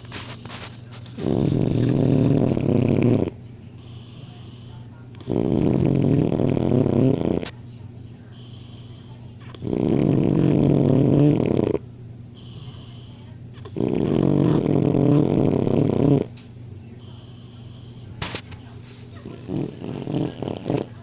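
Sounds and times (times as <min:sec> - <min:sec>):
boy snoring loudly: 0:01.2 - 0:03.3, 0:05.2 - 0:07.5, 0:09.5 - 0:11.8, 0:12.4 - 0:16.3, 0:19.3 - 0:21.0.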